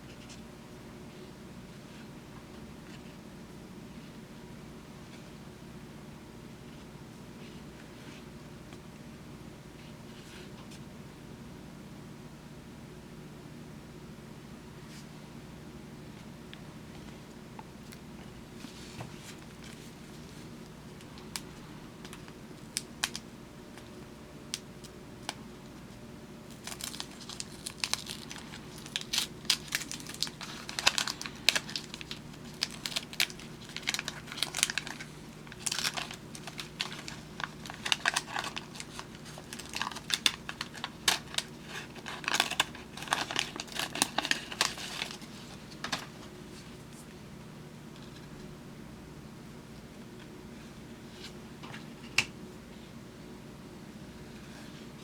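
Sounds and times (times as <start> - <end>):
wax paper wrapper crinkling: 26.5 - 47.0.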